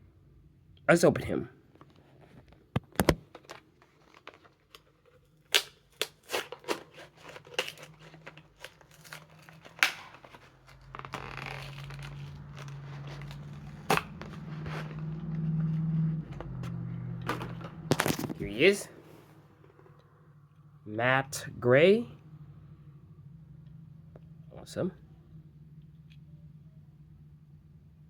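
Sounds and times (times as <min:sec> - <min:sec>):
blister packaging tearing and snapping: 0:02.8 - 0:18.5
steady low hum: 0:04.2 - 0:28.0.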